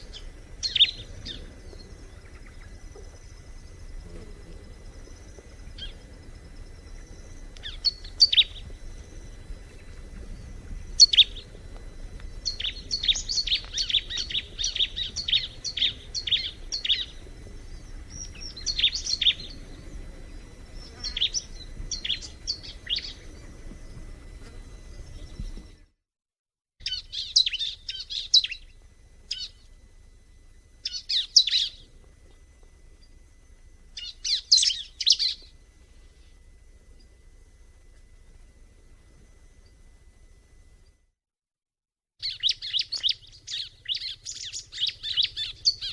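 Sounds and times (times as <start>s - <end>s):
bird chirping: 0.0s - 3.7s, 7.2s - 11.5s, 12.4s - 20.0s, 20.8s - 23.5s, 26.8s - 29.7s, 30.8s - 31.9s, 34.0s - 35.5s, 42.2s - 45.9s.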